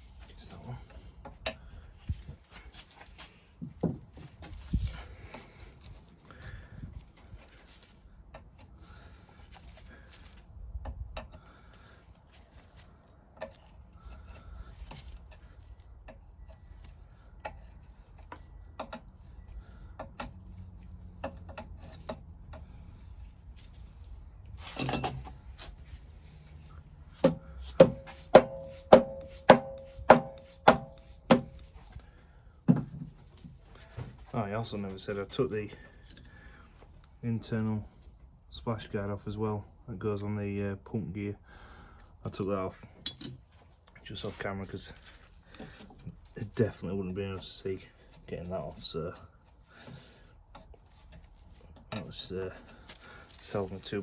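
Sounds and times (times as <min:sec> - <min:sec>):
hand tools clinking on metal: 0:24.6 - 0:25.4, 0:50.6 - 0:54.0
sharp metal-on-metal strikes: 0:27.2 - 0:31.6.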